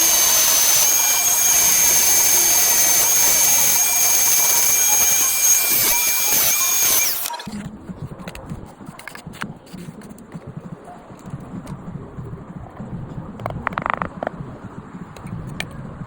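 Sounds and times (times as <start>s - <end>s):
angle grinder cutting: 0.0s - 7.5s.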